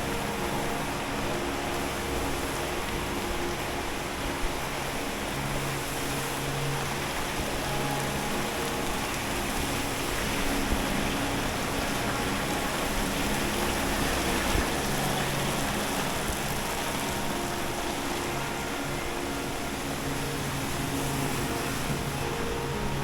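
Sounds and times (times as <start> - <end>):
rain-like noise: 0.0 - 23.0.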